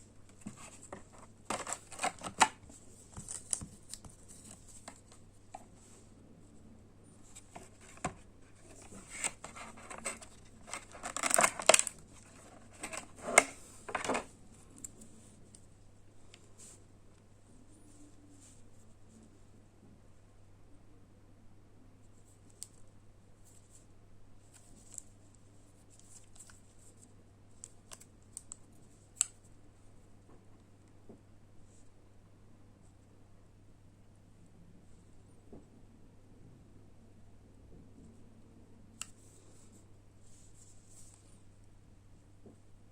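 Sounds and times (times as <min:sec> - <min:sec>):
packaging rustling: 0:00.4 - 0:05.2, 0:07.4 - 0:14.3.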